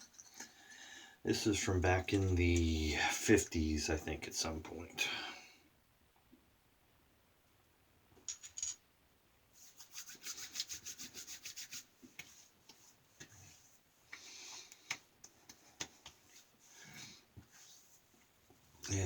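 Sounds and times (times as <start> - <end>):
hands rubbing on skin: 9.6 - 13.8, 14.6 - 16.7, 17.4 - 18.0.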